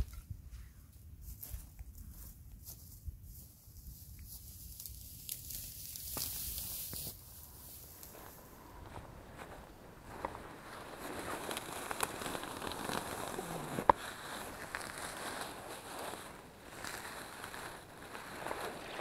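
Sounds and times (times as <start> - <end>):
campfire crackling and popping: 5.2 - 19.0.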